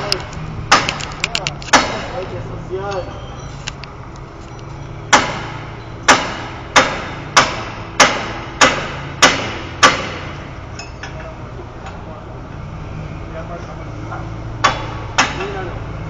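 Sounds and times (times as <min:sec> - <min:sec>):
hammer blows on metal: 0:05.1 - 0:11.3.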